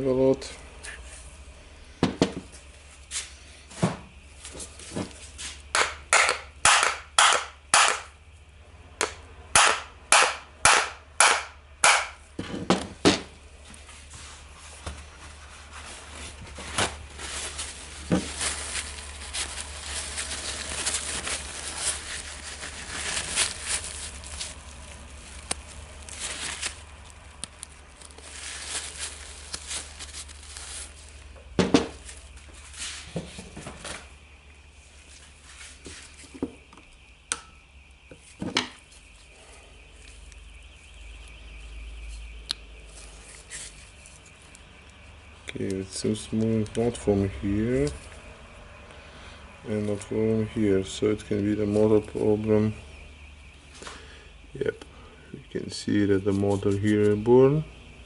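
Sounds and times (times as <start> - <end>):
sharp metal knocks: 9.6 - 12.2.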